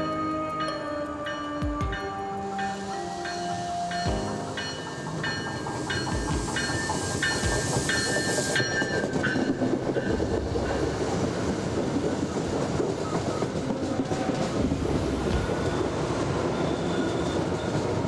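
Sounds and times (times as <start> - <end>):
bell-like ringing tone: 0.0 - 11.0
wheels clacking on rails: 0.6 - 18.0
train rushing rumble: 1.8 - 18.0.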